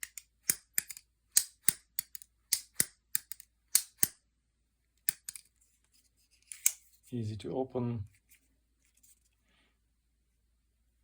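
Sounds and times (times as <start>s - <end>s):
pocket knife lock clicking: 0.0s - 4.2s.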